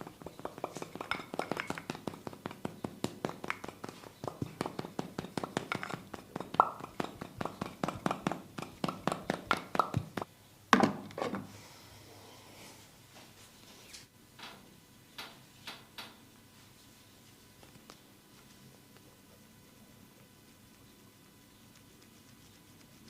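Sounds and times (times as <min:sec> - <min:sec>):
hands tapping and slapping body: 0:00.2 - 0:10.3.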